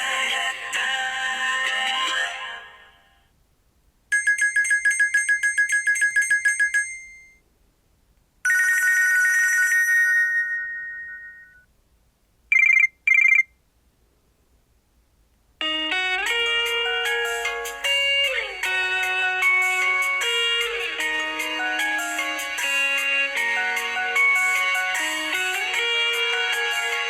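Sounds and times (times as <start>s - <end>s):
trilling phone ring: 4.1s - 7.4s, 8.4s - 11.7s, 12.5s - 13.5s
phone beeps: 8.5s - 11.6s, 12.5s - 13.5s
musical ringtone: 8.5s - 11.7s, 15.6s - 27.0s.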